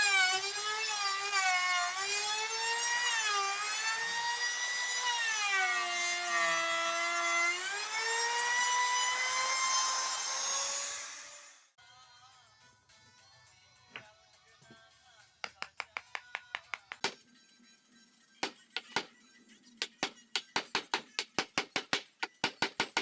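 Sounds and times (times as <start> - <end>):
electric drill whining into wood: 0.0 - 11.7.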